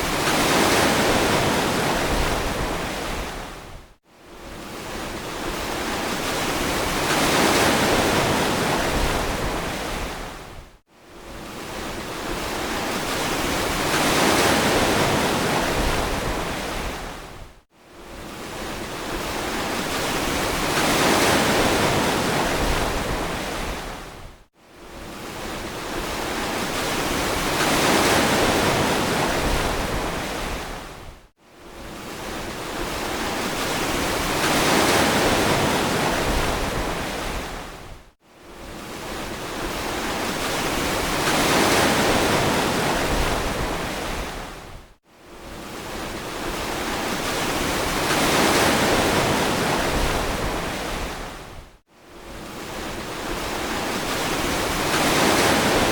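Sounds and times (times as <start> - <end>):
ocean surf washing on beach: 0.0 - 3.7, 4.4 - 10.5, 11.2 - 17.4, 18.1 - 24.2, 24.8 - 31.1, 31.7 - 37.9, 38.6 - 44.8, 45.4 - 51.6, 52.2 - 55.9.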